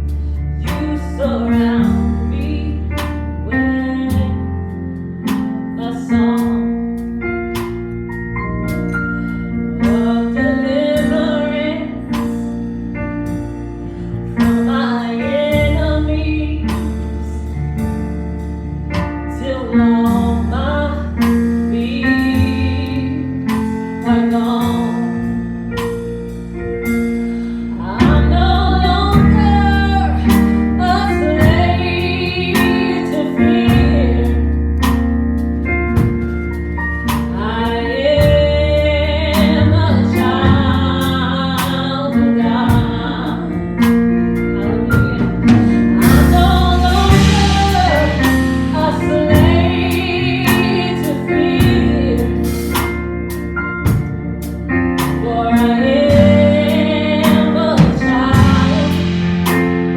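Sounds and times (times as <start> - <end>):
bass: 0.0 - 59.9
keyboard: 0.0 - 59.9
drums: 0.6 - 2.1, 2.9 - 4.3, 5.2 - 9.0, 9.8 - 11.4, 12.0 - 15.9, 16.6 - 59.9
praise team singing: 27.8 - 35.0, 44.6 - 53.0, 55.0 - 59.9.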